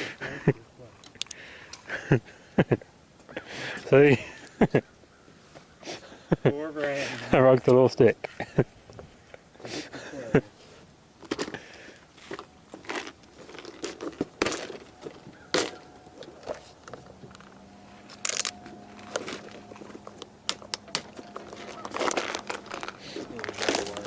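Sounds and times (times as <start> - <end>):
short irregular clicks: 1.0 - 1.8
packaging rustling and crinkling: 12.2 - 17.5, 18.2 - 24.0.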